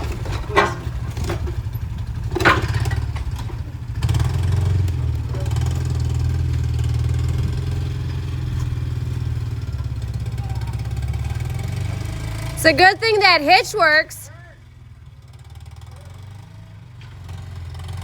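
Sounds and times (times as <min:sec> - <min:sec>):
vehicle engine running: 0:03.7 - 0:14.5.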